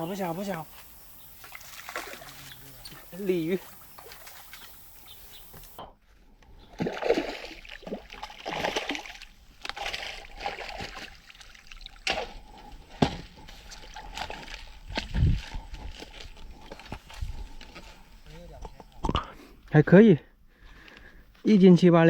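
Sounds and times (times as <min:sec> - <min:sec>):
water splashing and sloshing: 0:00.2 - 0:05.8, 0:06.7 - 0:18.2.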